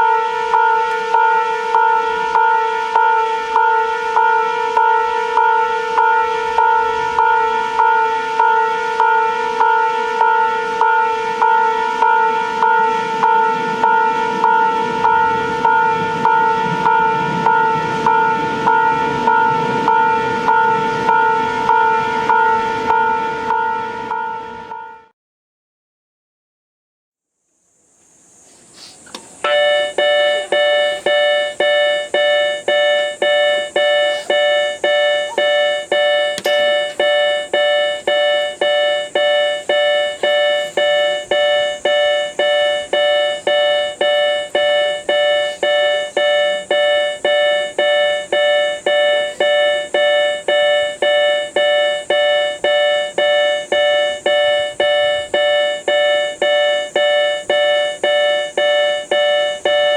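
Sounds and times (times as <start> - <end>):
electronic chime pulses: 29.4 - 59.9.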